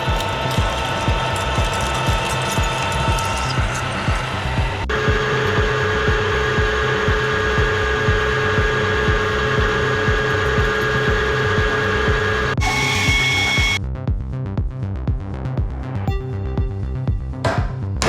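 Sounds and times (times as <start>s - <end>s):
machine motor whining: 0.0s - 13.8s
background music with beat: 0.0s - 18.0s.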